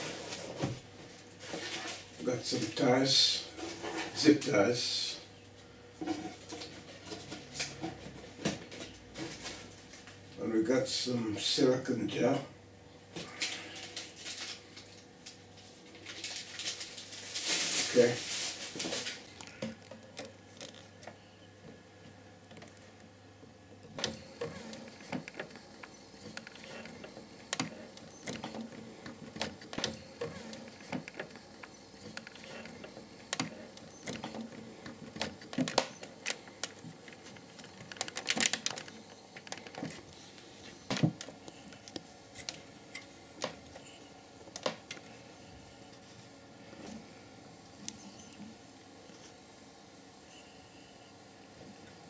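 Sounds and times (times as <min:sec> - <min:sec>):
computer hardware clicks and knocks: 0:23.9 - 0:40.0.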